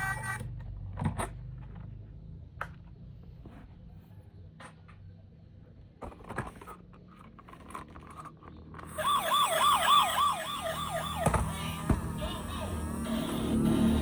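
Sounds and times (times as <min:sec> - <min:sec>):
toy siren yelping: 0:08.9 - 0:14.0.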